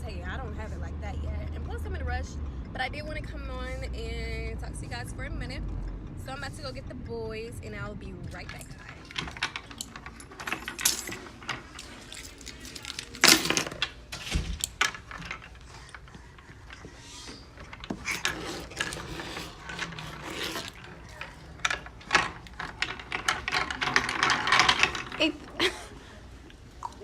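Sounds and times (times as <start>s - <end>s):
mechanical clicks and rattles: 8.2s - 26.6s.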